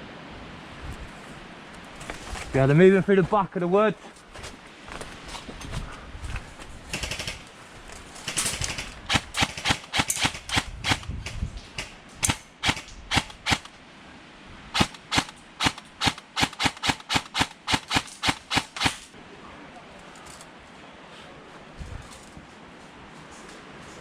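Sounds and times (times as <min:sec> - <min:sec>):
airsoft gun shots: 0:08.3 - 0:13.7, 0:14.8 - 0:19.0.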